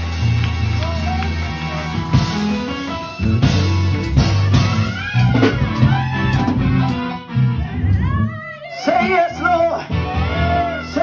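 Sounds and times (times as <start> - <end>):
drums: 0.0 - 8.4
guitar: 0.0 - 11.0.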